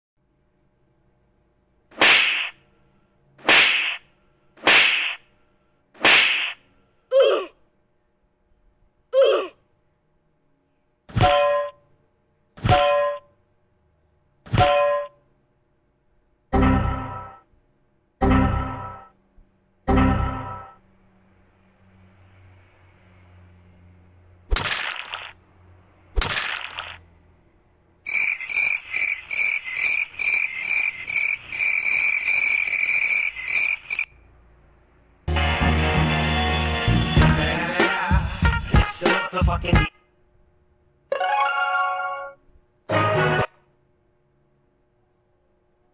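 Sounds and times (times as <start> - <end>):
animal calling in rapid pulses: 28.1 - 34.1.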